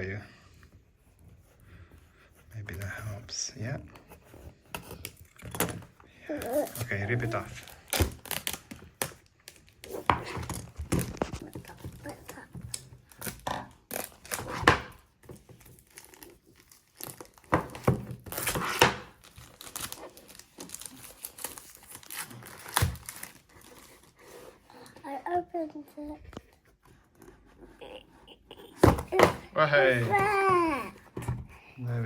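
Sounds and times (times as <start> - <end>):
packaging ripping and crinkling: 6.3 - 24.4.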